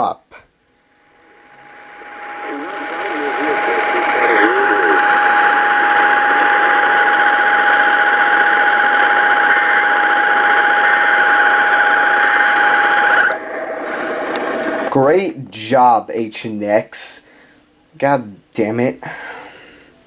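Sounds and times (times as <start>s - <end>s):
radio hiss: 0.9s - 15.9s.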